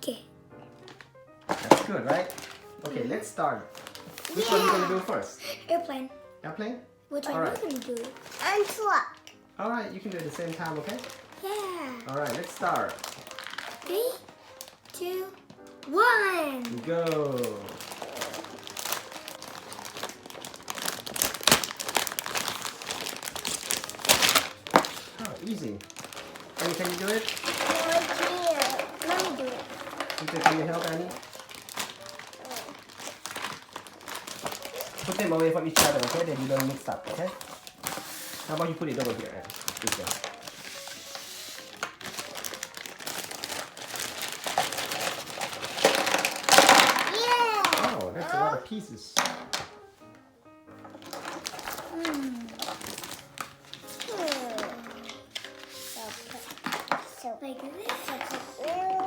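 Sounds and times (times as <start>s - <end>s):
plastic bags crinkling: 0.1s - 5.8s, 7.2s - 49.9s, 50.7s - 59.0s
plastic bags tearing: 0.8s - 5.2s, 7.2s - 49.8s, 50.7s - 59.0s
small plastic pieces clicking: 41.9s - 48.1s.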